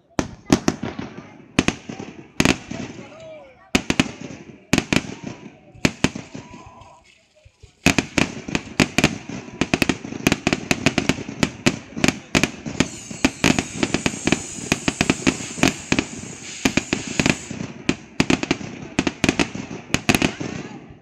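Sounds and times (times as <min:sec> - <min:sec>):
fireworks bangs and pops: 0:00.0 - 0:21.0
high fizzing hiss: 0:12.7 - 0:17.6.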